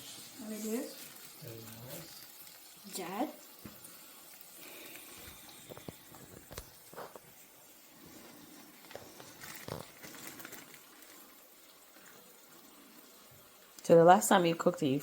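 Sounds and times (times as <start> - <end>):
steak sizzling in a pan: 0.0 - 15.0.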